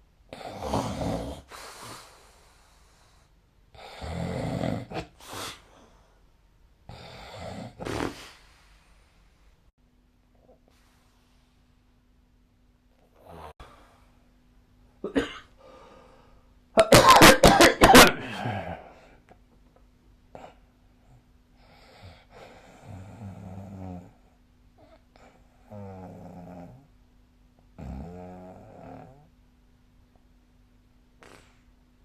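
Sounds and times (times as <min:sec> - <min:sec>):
person snoring: 0:00.3 - 0:01.8, 0:03.8 - 0:05.6, 0:06.9 - 0:08.6, 0:18.2 - 0:19.1, 0:22.0 - 0:24.2, 0:24.8 - 0:26.9, 0:27.8 - 0:29.3
loud rasping snore burst: 0:00.3 - 0:02.0, 0:03.8 - 0:05.6, 0:06.9 - 0:08.6, 0:27.8 - 0:29.3.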